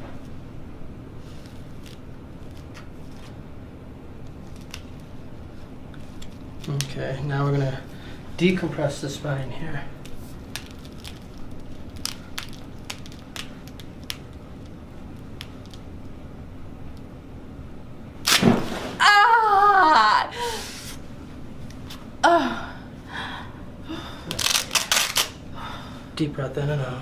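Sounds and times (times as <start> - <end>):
sharp thud: 18.3 - 19.0
woman crying out: 19.0 - 20.7, 22.2 - 22.8
woman groaning: 19.0 - 20.8, 22.2 - 22.9.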